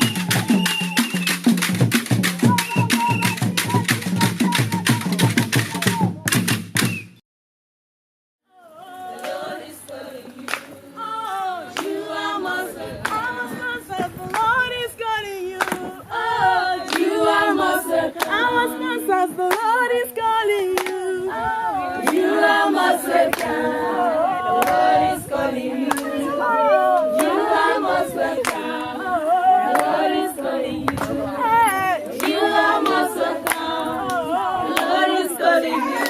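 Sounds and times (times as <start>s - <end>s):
group singing in harmony: 0.0s - 6.0s, 8.6s - 36.0s
percussive claps keeping time: 0.0s - 7.1s, 32.2s - 35.2s.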